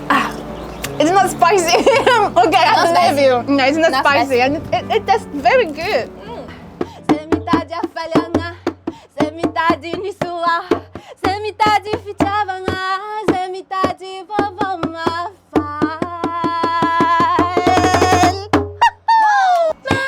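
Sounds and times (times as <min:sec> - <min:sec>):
wavering melody: 0:00.0 - 0:06.8.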